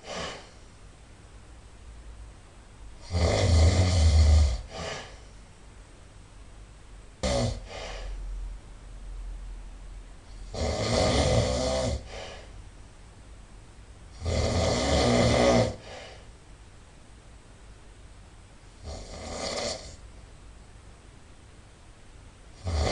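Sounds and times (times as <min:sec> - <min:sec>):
sharp snort: 0:00.0 - 0:00.6, 0:03.0 - 0:05.2, 0:07.2 - 0:08.2, 0:10.5 - 0:12.5
person snoring loudly: 0:03.0 - 0:05.2, 0:07.2 - 0:08.1, 0:10.3 - 0:12.5, 0:14.2 - 0:16.2, 0:18.8 - 0:20.0, 0:22.6 - 0:22.9.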